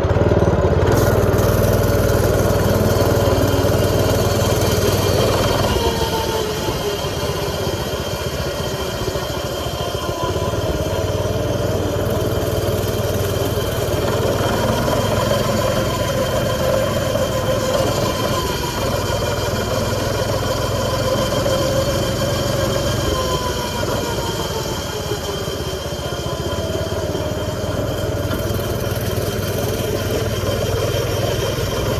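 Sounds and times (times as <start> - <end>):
small two-stroke engine running: 0.0 - 31.9.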